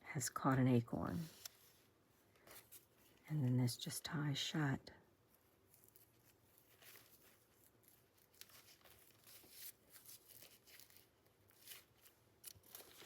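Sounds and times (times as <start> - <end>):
paper and card rustling: 1.1 - 3.2, 5.3 - 13.0.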